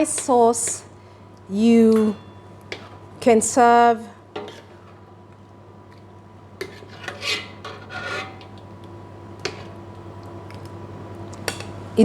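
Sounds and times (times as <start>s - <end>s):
steady low hum: 0.0s - 12.0s
spoon scraping a pot: 4.4s - 5.0s, 6.6s - 8.5s.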